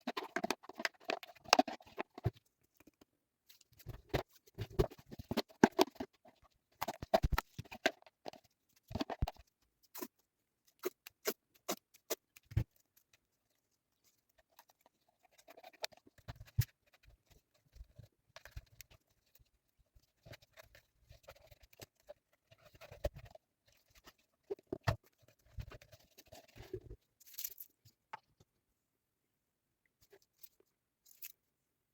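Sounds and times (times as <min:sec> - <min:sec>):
small objects clicking and scraping: 0:30.3 - 0:31.4.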